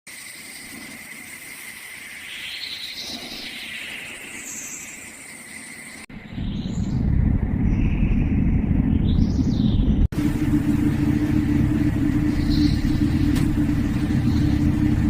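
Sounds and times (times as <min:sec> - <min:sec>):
insect-like high drone and hiss: 0:00.1 - 0:07.0, 0:10.2 - 0:15.0.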